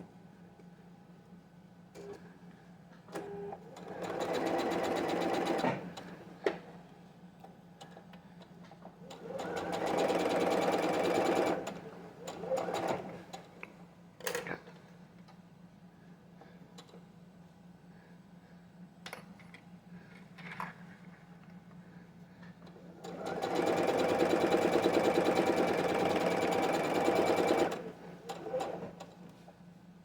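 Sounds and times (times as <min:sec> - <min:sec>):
sewing machine stitching: 0:03.2 - 0:06.2, 0:09.1 - 0:13.5, 0:22.9 - 0:29.2.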